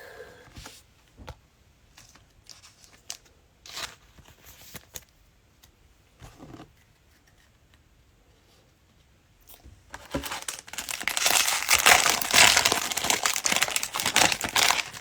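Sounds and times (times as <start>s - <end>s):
wrapper rustling: 9.9s - 15.0s.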